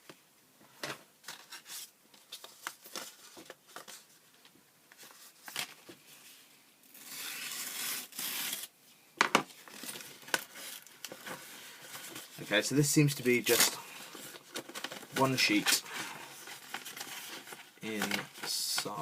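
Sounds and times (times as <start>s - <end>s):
packaging tearing: 6.9s - 8.7s.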